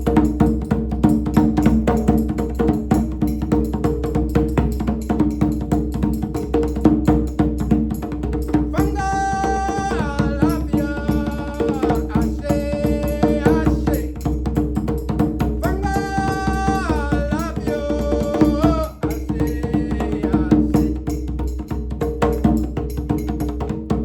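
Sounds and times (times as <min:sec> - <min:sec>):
djembe hand drumming: 0:00.0 - 0:24.0.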